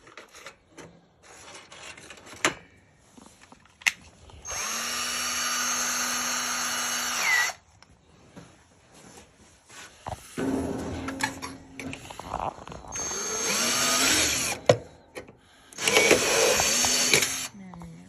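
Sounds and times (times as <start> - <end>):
electric drill whining: 4.4 - 7.6, 12.9 - 14.8, 15.7 - 17.6.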